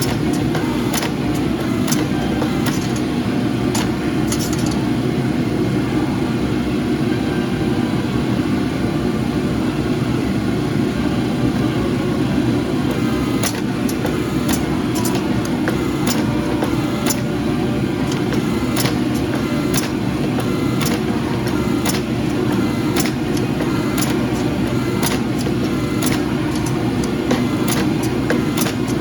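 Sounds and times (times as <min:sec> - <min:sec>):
forging equipment droning: 0:00.0 - 0:05.0, 0:12.7 - 0:29.0.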